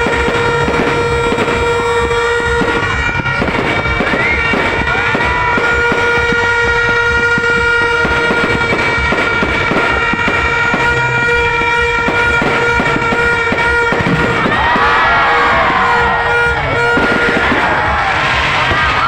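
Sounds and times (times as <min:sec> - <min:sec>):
fireworks banging and crackling: 0:00.0 - 0:19.0
long horn blast: 0:00.0 - 0:19.0
whistling glides: 0:03.9 - 0:06.4.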